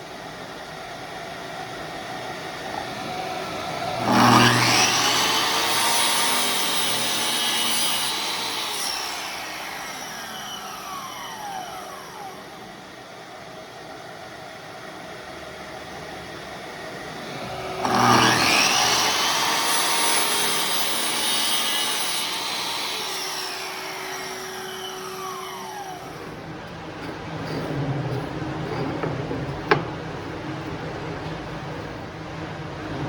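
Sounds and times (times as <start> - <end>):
power tool motor spinning: 3.8 - 8.4, 17.8 - 26.4.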